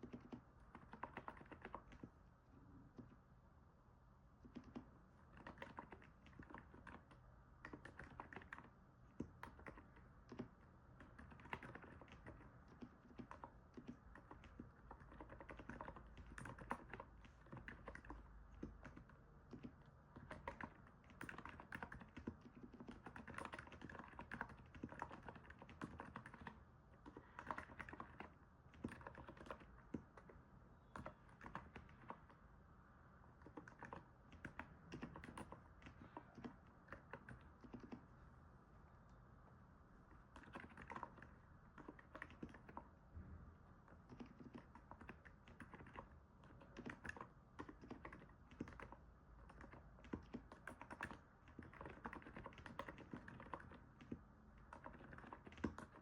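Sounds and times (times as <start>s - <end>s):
soft keyboard keystrokes: 0.0s - 2.2s, 2.9s - 3.3s, 4.3s - 32.4s, 33.3s - 38.2s, 40.0s - 43.0s, 43.8s - 56.0s.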